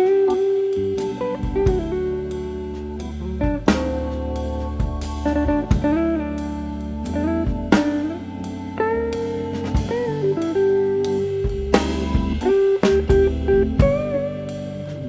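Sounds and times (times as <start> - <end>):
drum kit beats: 0.0 - 15.0
guitar playing bent notes: 0.0 - 15.0.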